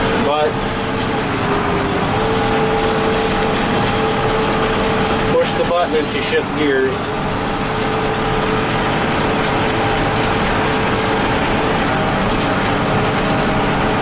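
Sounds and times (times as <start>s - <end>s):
baler mechanical noise: 0.0s - 14.0s
steady cab hum: 0.0s - 14.0s
tractor running under load: 0.0s - 14.0s.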